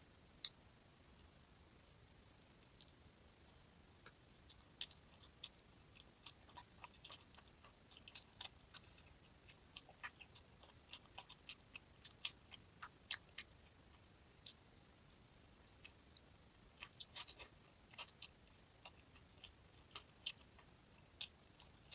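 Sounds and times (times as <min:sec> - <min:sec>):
eating clicks and crunches: 0:02.6 - 0:21.9.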